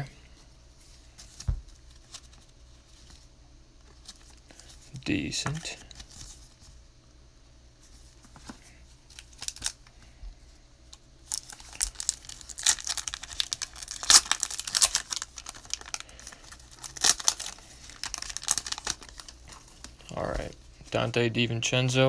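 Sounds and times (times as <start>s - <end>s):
wrapper tearing and crinkling: 9.1s - 9.8s, 11.3s - 20.0s.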